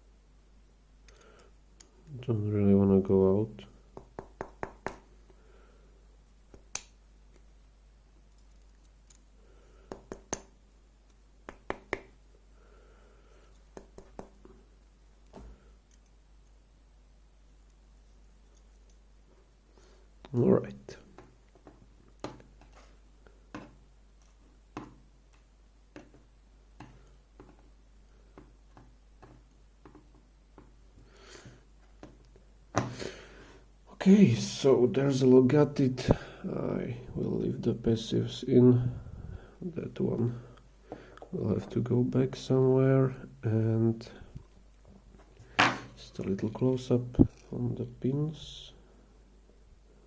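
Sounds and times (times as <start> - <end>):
metal lock parts clicking: 8.3 - 9.3.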